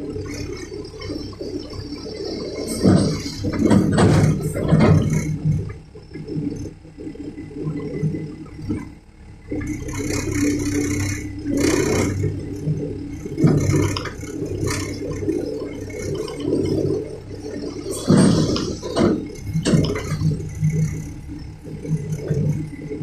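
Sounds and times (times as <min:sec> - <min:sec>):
excavator diesel engine running: 0:00.0 - 0:23.0.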